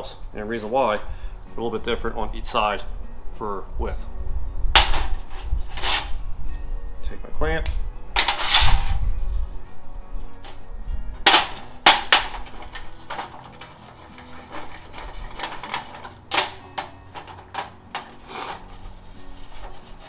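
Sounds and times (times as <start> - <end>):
background music: 0.0 - 20.0
metal parts clicking and knocking: 11.2 - 18.6.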